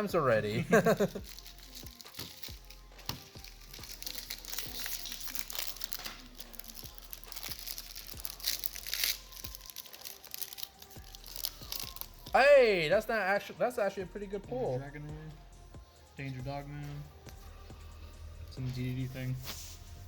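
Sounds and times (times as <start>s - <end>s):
foil wrappers crinkling and tearing: 0.7s - 12.4s.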